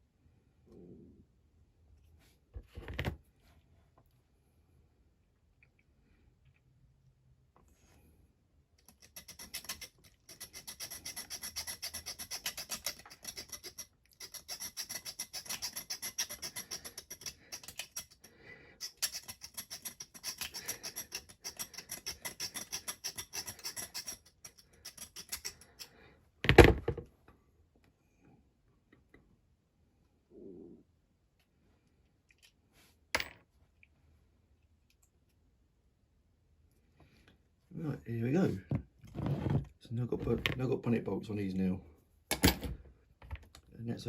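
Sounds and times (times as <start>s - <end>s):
hacksaw rasping through metal: 8.9s - 25.9s.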